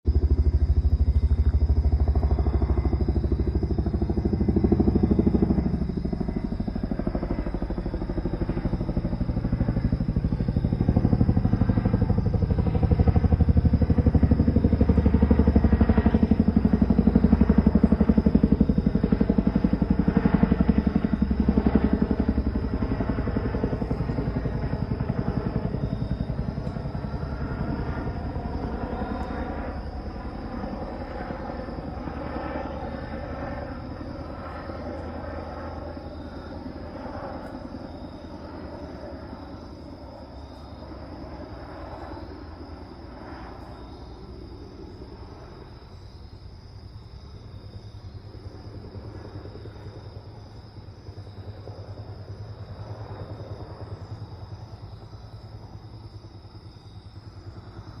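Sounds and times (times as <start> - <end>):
helicopter rotors thumping: 0.1 - 42.0.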